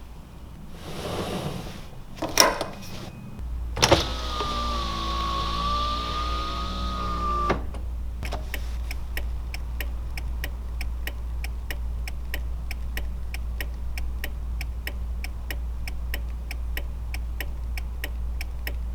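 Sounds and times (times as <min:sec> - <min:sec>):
power window motor whining: 0:00.8 - 0:08.6
window stopping clunk: 0:02.2 - 0:08.7
flasher relay ticking: 0:03.4 - 0:18.9.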